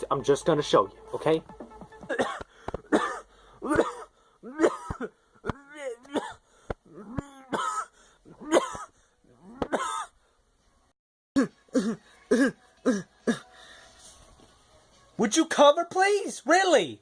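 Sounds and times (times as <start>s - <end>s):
person coughing: 2.0s - 5.2s, 6.0s - 6.4s, 7.2s - 10.2s, 11.4s - 13.4s
person clearing throat: 2.0s - 10.2s, 11.4s - 13.5s.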